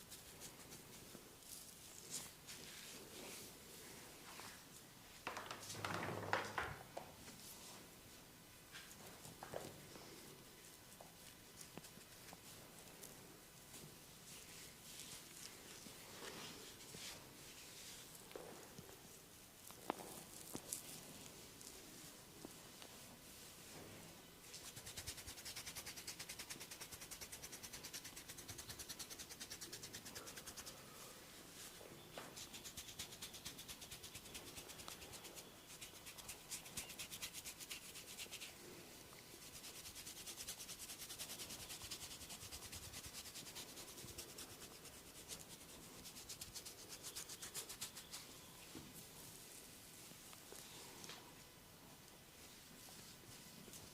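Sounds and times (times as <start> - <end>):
hands rubbing over skin: 31.5 - 38.6, 39.4 - 48.3.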